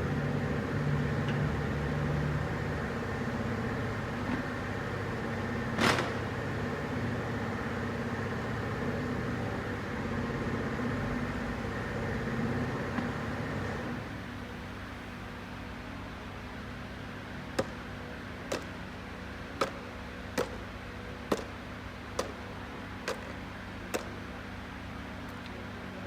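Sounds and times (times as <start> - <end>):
motor running steadily: 0.0 - 15.5.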